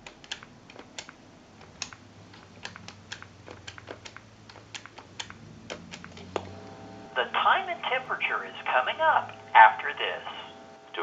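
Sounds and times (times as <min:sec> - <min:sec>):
faint irregular clicks: 0:00.0 - 0:06.5
steady low hum: 0:00.0 - 0:11.0.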